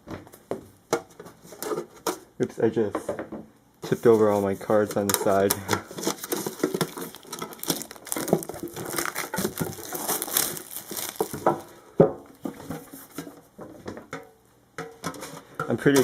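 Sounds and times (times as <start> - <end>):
plastic packaging crinkling: 5.4 - 11.8.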